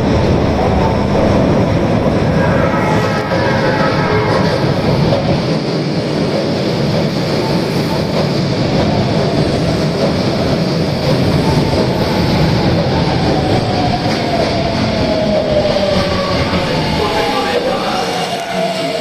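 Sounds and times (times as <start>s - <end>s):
subway train rumble: 0.0s - 19.0s
train whine sliding down: 0.6s - 8.3s.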